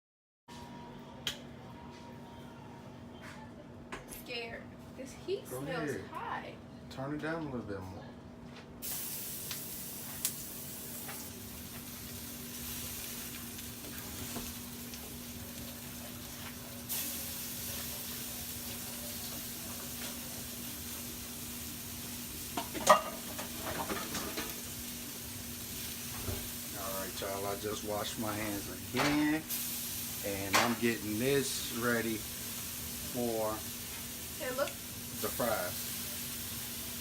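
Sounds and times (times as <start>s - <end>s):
burger patties sizzling in a pan: 8.8s - 37.0s.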